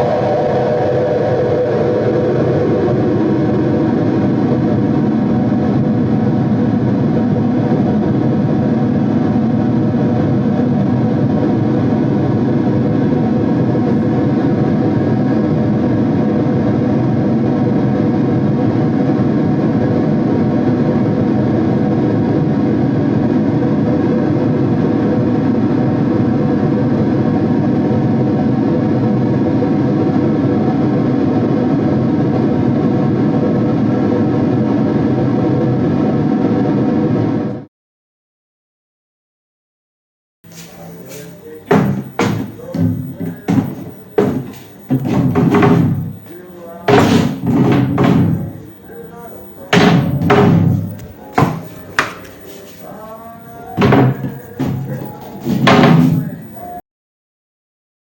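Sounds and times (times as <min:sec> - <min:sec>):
harsh noise music with drones: 0:00.0 - 0:22.6.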